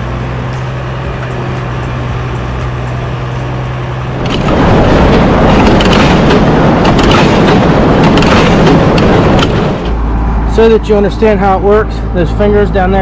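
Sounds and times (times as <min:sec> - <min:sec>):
hay baler rattling clatter: 0:04.1 - 0:10.0.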